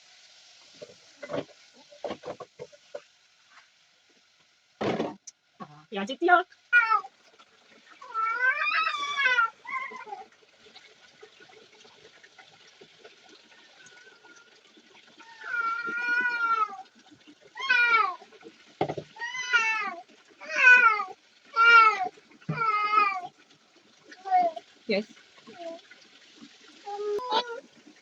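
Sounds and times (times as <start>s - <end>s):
cat meowing: 6.8s - 7.1s, 8.0s - 10.2s, 15.2s - 16.8s, 19.2s - 23.3s.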